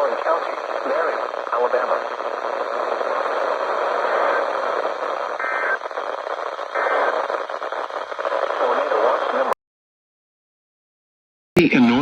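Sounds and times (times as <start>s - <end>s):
radio static hiss: 0.0s - 9.6s.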